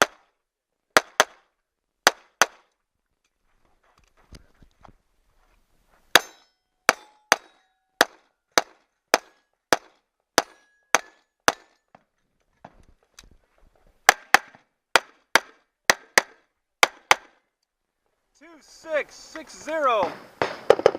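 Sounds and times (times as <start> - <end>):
steel plate ringing: 6.2 - 7.7.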